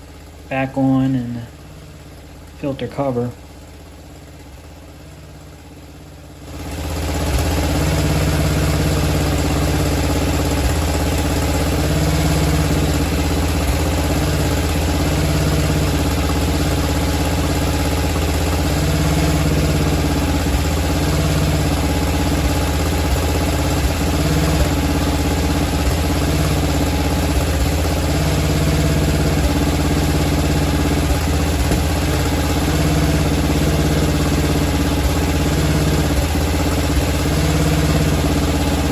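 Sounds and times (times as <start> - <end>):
mower engine idling: 0.0 - 38.9.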